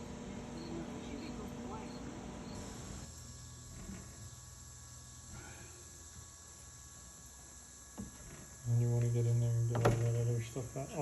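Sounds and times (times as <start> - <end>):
insects chirring: 0.0 - 11.0.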